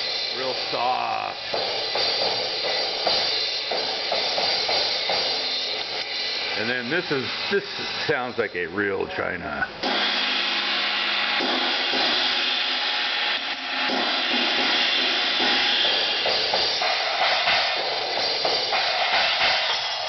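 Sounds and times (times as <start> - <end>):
china cymbal ringing: 0.0 - 9.0, 9.9 - 20.0.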